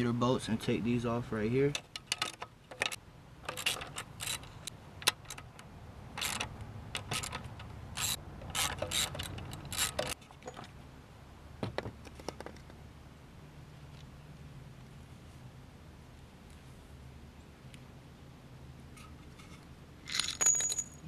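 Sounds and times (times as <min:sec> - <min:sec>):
ratchet wrench clicking: 0:01.7 - 0:05.6, 0:06.2 - 0:10.2
metal tool clinks: 0:19.4 - 0:21.0.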